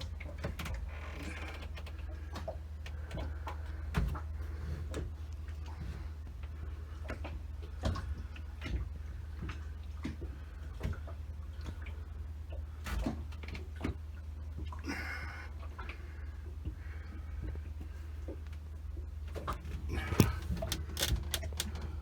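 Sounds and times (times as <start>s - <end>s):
steady low hum: 0.0s - 22.0s
tools and metal parts clicking: 20.2s - 21.8s.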